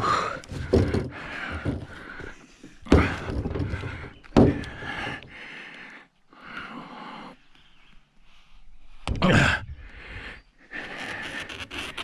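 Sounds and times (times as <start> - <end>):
heavy thuds: 0.0 - 5.2
cable scraping and rustling: 10.8 - 12.0.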